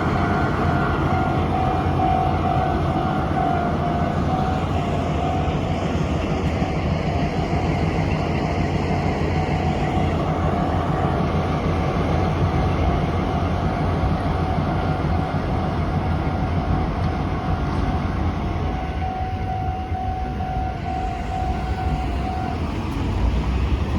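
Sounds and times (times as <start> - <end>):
level crossing alarm ringing: 0.0 - 11.5, 15.9 - 22.8
locomotive low rumble: 0.0 - 23.9.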